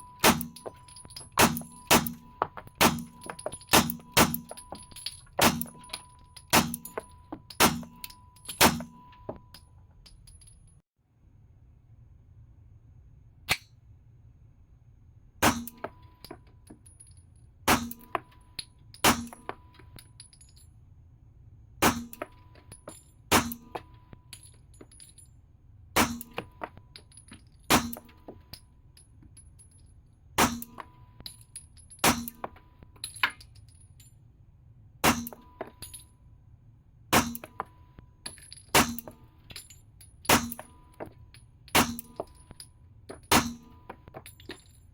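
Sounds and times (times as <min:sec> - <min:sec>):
brass cases clinking: 0:00.0 - 0:10.8, 0:35.1 - 0:36.1, 0:37.2 - 0:44.9
pistol shots: 0:00.2 - 0:00.6, 0:01.4 - 0:04.6, 0:05.4 - 0:05.8, 0:06.5 - 0:07.0, 0:07.6 - 0:09.0, 0:15.4 - 0:15.8, 0:17.7 - 0:18.2, 0:21.8 - 0:22.4, 0:23.3 - 0:23.8, 0:26.0 - 0:26.5, 0:30.4 - 0:30.8, 0:32.0 - 0:32.5, 0:35.0 - 0:35.5, 0:37.1 - 0:37.6, 0:40.3 - 0:40.8, 0:41.8 - 0:42.2, 0:43.3 - 0:43.8.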